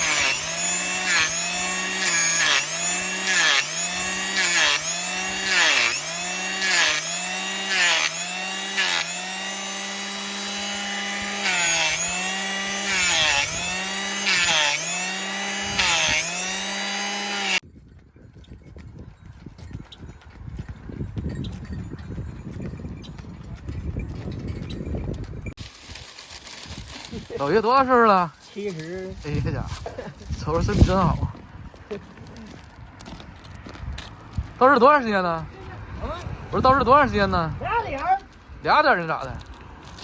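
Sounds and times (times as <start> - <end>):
electric trimming tool whining: 0.0 - 17.6.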